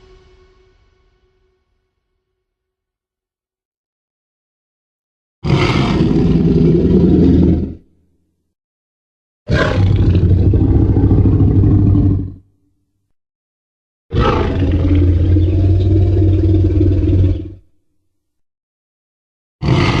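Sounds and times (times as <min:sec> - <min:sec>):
long low dinosaur roar: 0:05.4 - 0:07.9, 0:09.5 - 0:12.4, 0:14.1 - 0:17.7, 0:19.6 - 0:20.0.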